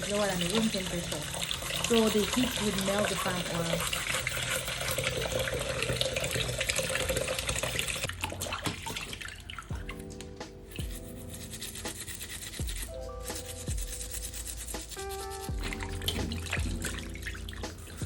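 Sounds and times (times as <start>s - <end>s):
tap running water: 0.0s - 11.0s, 15.0s - 18.0s
background music: 0.0s - 18.0s
hands scrubbing meat: 8.6s - 18.0s.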